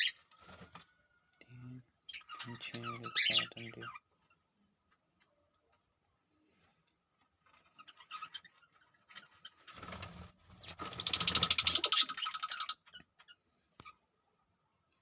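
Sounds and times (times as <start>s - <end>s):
lovebird chirping and chattering: 2.1s - 4.5s, 7.4s - 9.9s, 10.6s - 14.0s.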